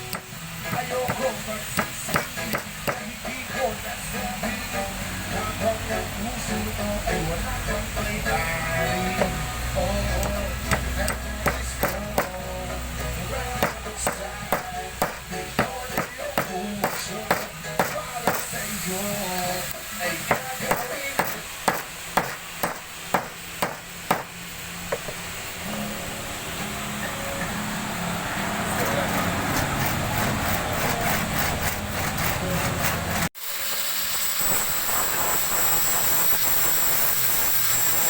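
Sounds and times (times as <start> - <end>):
claw hammer striking: 0.0 - 3.1, 10.1 - 18.5, 20.3 - 25.2
background music with held notes: 25.6 - 29.5.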